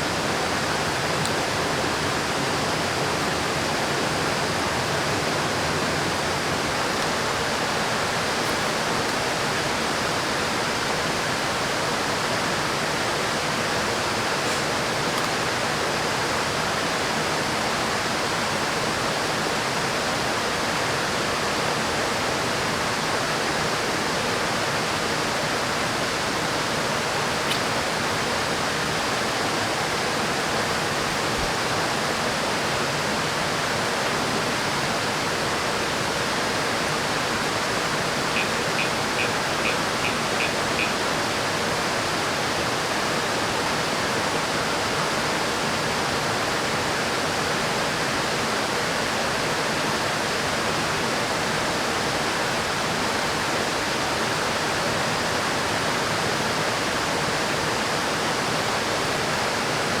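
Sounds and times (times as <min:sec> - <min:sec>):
river water rushing: 0:00.0 - 1:00.0
quick high ticks: 0:38.3 - 0:41.0.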